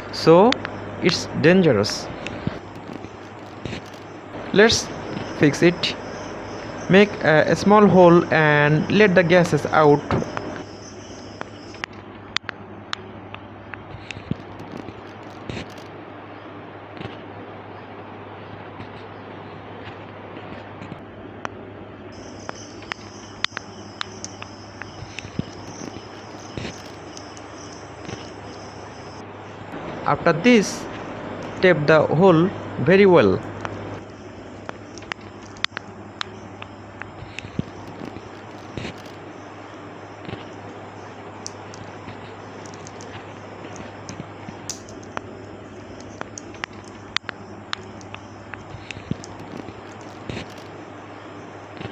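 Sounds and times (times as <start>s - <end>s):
steady hiss: 0.0s - 11.9s, 22.1s - 51.9s
low hum: 0.0s - 51.9s
light clicks of small parts: 1.8s - 4.2s, 11.4s - 15.9s, 22.4s - 28.7s, 33.4s - 39.2s, 41.4s - 50.8s
small tool clicking and tapping: 44.7s - 45.2s.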